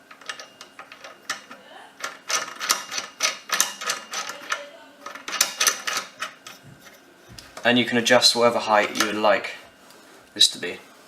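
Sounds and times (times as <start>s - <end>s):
metallic clicking and clinking: 0.1s - 6.6s.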